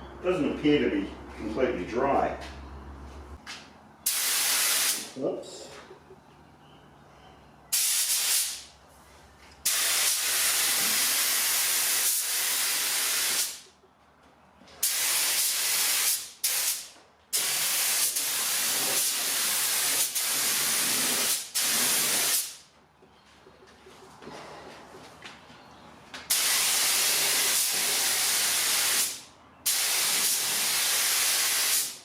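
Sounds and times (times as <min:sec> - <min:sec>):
paint spray hissing: 0:04.1 - 0:05.2, 0:07.7 - 0:08.7, 0:09.7 - 0:13.6, 0:14.8 - 0:22.6, 0:26.3 - 0:32.0.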